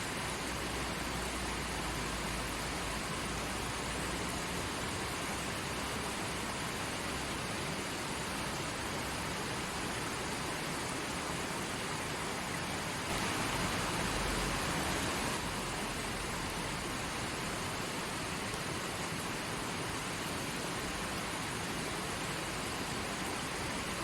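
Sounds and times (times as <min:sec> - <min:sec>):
stream water flowing: 0:00.0 - 0:24.0.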